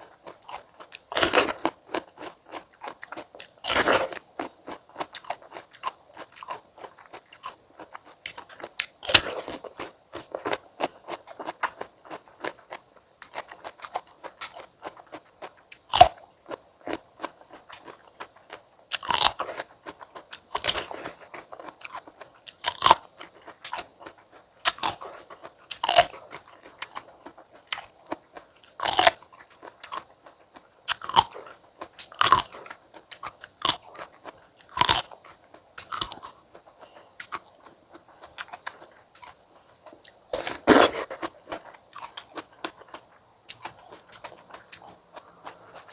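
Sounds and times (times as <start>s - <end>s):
fruit bites crunching: 0.2s - 45.9s
wet chewing: 18.9s - 45.9s.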